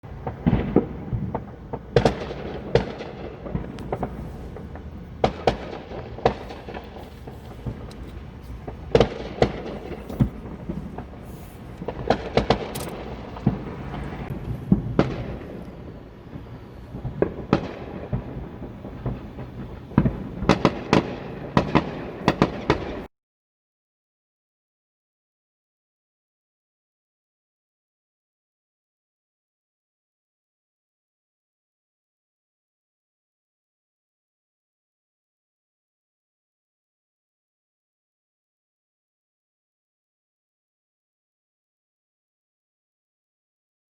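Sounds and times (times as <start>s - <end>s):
continuous low rumble: 0.1s - 23.0s
fireworks exploding: 0.1s - 23.1s.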